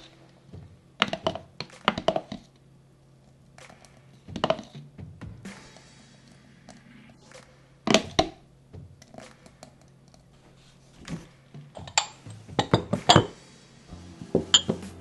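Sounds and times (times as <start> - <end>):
utensils and glass dishes clinking: 11.8 - 13.4, 14.4 - 14.8.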